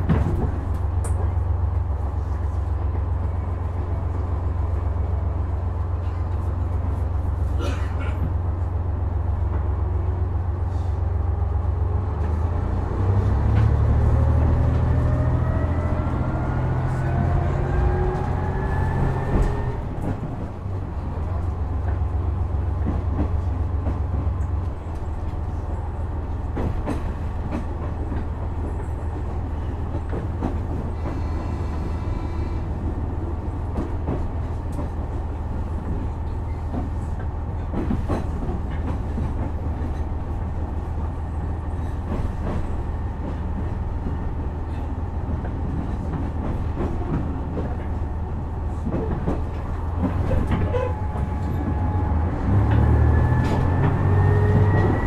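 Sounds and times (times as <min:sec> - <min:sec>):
wheels clicking on rail joints: 0:41.7 - 0:55.0.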